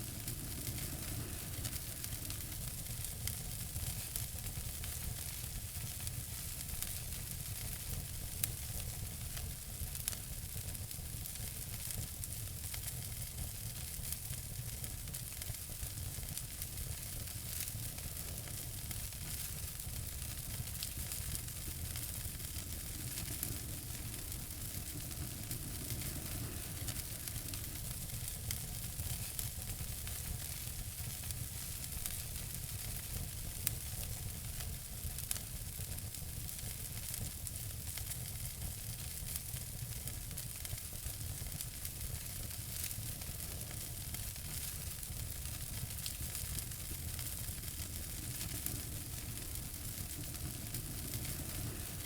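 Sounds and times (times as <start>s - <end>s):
low rumble of flames: 0.0s - 52.0s
wood fire crackling and popping: 0.0s - 52.0s.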